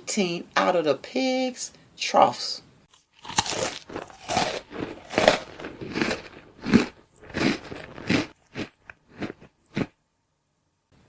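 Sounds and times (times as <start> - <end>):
crunchy chewing: 2.9 - 10.0.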